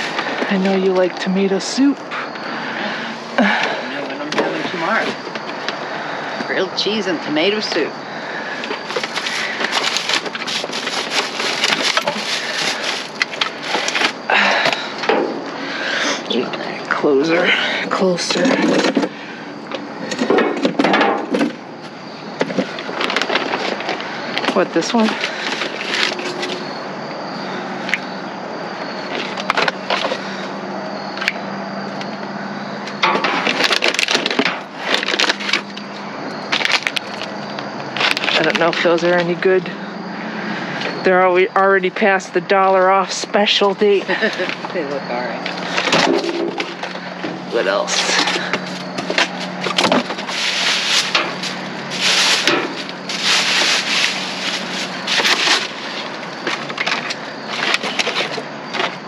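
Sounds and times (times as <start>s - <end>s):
packaging crackling and rustling: 8.6s - 14.8s, 22.4s - 26.8s, 33.0s - 39.0s, 45.4s - 59.0s
items knocking and clattering: 8.6s - 15.4s, 18.2s - 21.6s, 22.4s - 26.7s, 32.9s - 35.8s, 45.4s - 59.0s.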